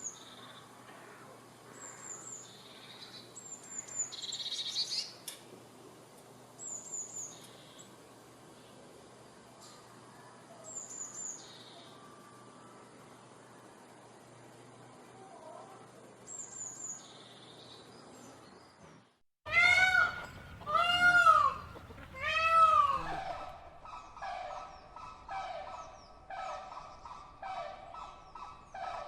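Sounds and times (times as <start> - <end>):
loud arching bird calls: 19.5 - 29.0.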